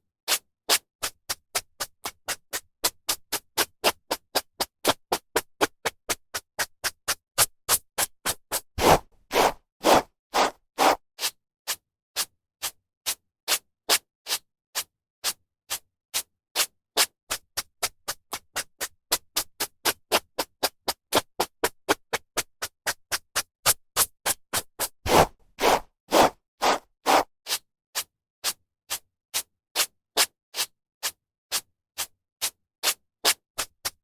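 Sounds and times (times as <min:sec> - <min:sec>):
hairbrush strokes through hair: 0:08.8 - 0:11.0, 0:25.1 - 0:27.3.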